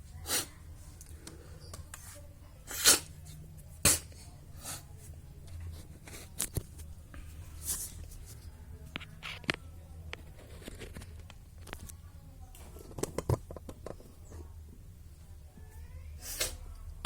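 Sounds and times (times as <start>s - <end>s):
person sniffing through nose: 0.2s - 0.6s, 2.7s - 3.1s, 16.2s - 16.6s.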